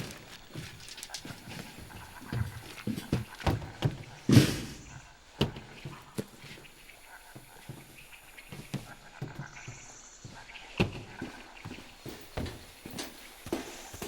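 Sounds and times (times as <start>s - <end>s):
thuds and knocks: 1.7s - 6.4s, 8.5s - 13.7s.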